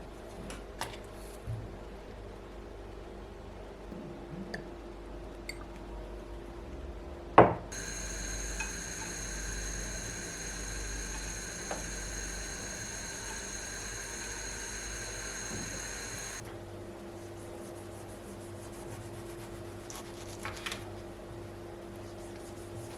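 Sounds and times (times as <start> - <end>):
steady hiss: 7.7 - 16.4.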